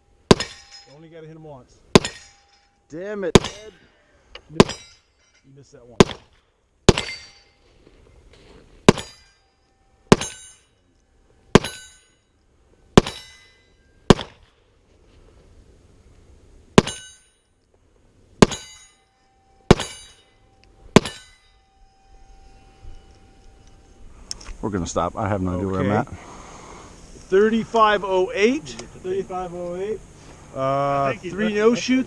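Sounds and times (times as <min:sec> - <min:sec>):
steel plates ringing: 0:00.0 - 0:06.0, 0:06.9 - 0:07.8, 0:08.4 - 0:14.2, 0:16.8 - 0:17.6, 0:18.4 - 0:24.1
pistol shots: 0:00.3 - 0:00.6, 0:01.9 - 0:02.3, 0:03.3 - 0:03.7, 0:04.6 - 0:04.9, 0:06.0 - 0:07.2, 0:08.9 - 0:09.2, 0:10.1 - 0:10.4, 0:11.5 - 0:11.9, 0:13.0 - 0:13.3, 0:14.1 - 0:14.4, 0:16.8 - 0:17.1, 0:18.4 - 0:18.8, 0:19.7 - 0:20.1, 0:21.0 - 0:21.3.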